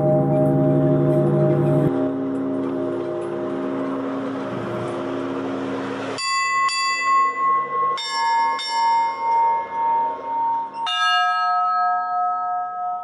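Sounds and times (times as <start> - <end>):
large bell humming: 0.0 - 13.0
small bells struck quickly: 6.2 - 13.0.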